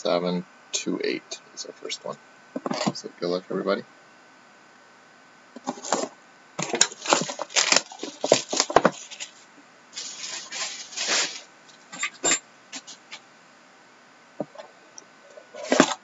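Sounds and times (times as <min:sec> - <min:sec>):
packaging rustling and tearing: 0:05.6 - 0:11.5.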